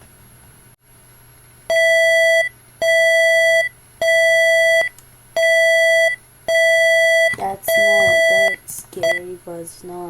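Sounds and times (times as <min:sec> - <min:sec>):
electronic alarm beeps: 0:01.7 - 0:09.3.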